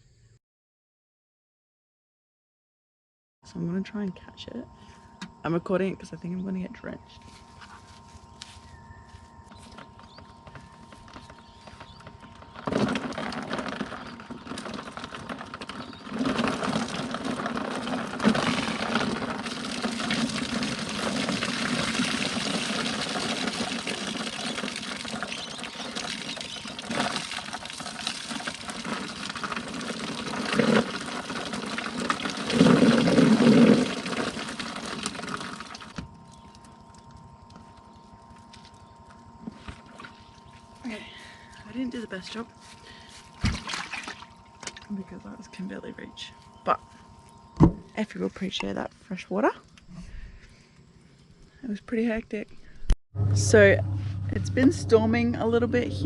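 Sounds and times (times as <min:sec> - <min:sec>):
rainwater pouring and splashing: 0:12.6 - 0:37.7, 0:43.2 - 0:44.9.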